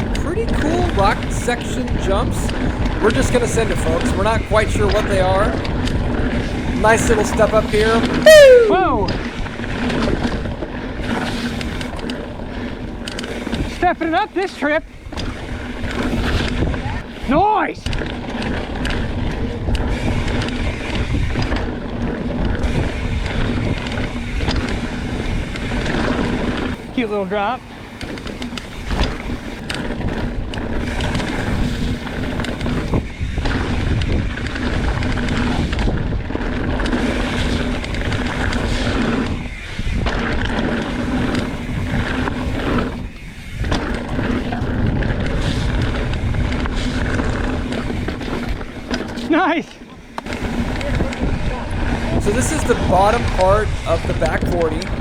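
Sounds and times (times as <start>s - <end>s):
wind rushing over microphone: 0.0s - 13.8s, 28.8s - 49.1s.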